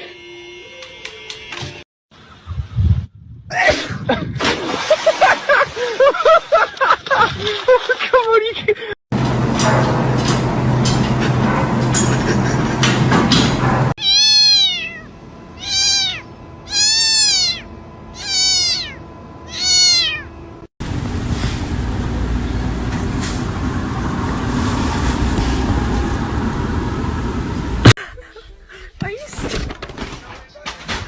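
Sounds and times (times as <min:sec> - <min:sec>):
cat meowing: 0:14.0 - 0:20.4.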